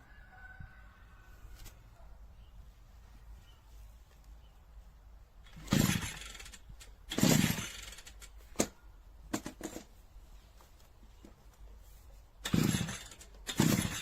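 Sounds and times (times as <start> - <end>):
recoil starter cord pulls: 5.5 - 8.7, 12.4 - 14.0.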